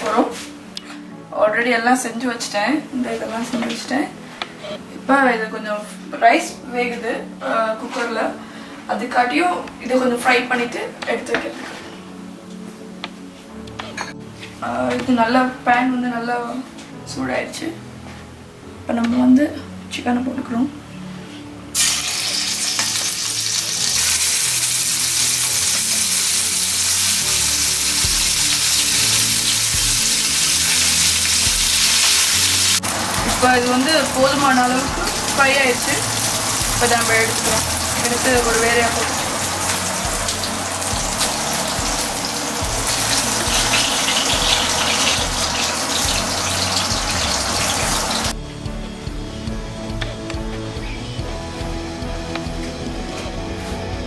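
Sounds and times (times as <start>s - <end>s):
background music: 0.0s - 54.0s
chicken sizzling in hot oil: 21.8s - 48.4s.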